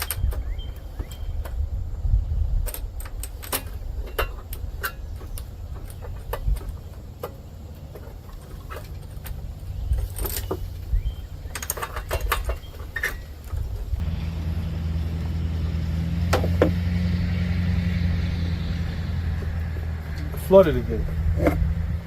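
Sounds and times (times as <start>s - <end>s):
clicks and rattles: 2.6s - 14.0s
mower engine running: 12.7s - 22.0s.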